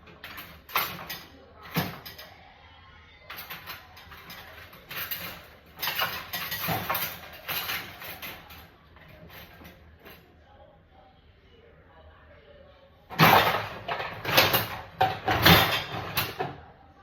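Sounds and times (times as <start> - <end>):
dishes and cutlery clattering: 0.0 - 2.4, 3.3 - 10.2, 13.1 - 16.6.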